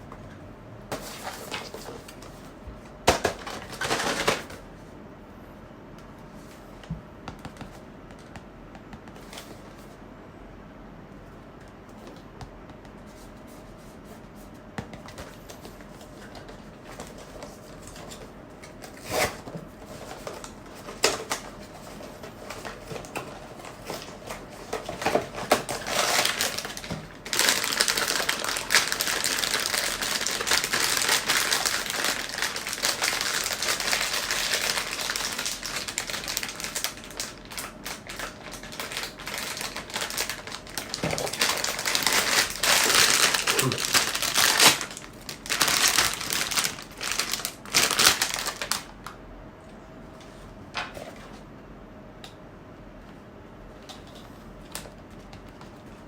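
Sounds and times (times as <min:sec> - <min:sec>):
packaging crinkling and rustling: 0:00.9 - 0:04.7, 0:15.0 - 0:49.1.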